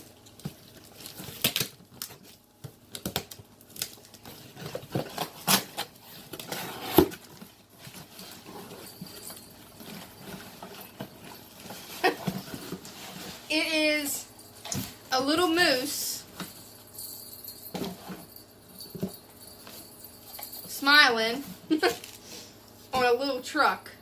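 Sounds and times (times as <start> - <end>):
packaging rustling and crinkling: 0.0 - 13.5, 21.5 - 22.8.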